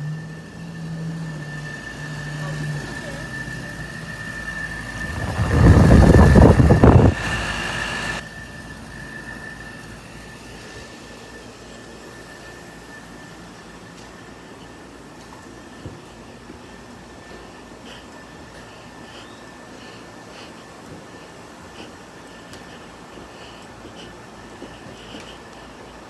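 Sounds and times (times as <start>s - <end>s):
air conditioner whining: 0.0s - 26.0s
rush of air: 4.3s - 8.2s.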